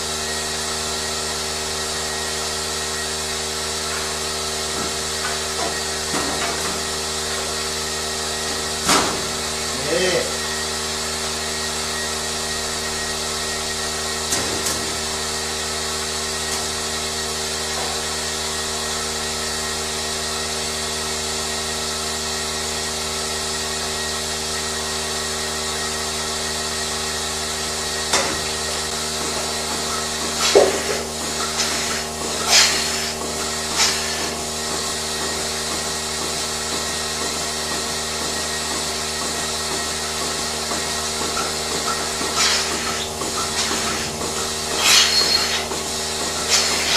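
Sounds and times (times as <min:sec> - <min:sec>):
machine humming: 0:00.0 - 0:46.9
sharp knocks and clanks: 0:04.7 - 0:07.5, 0:08.8 - 0:09.4, 0:28.1 - 0:46.9.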